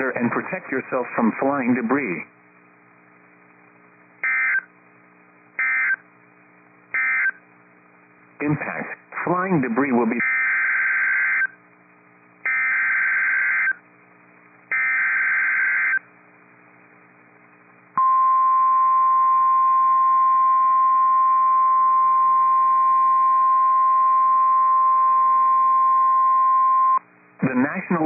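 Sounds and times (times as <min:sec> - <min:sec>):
buzzy data bursts: 0:04.2 - 0:04.7, 0:05.6 - 0:06.0, 0:07.0 - 0:07.4, 0:12.4 - 0:13.8, 0:14.7 - 0:16.0.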